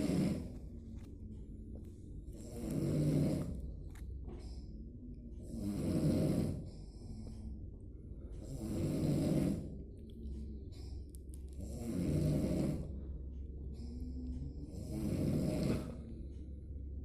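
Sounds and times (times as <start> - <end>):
person snoring: 0.0 - 0.6, 2.4 - 3.7, 5.4 - 7.3, 8.4 - 9.8, 11.6 - 13.0, 13.8 - 16.3.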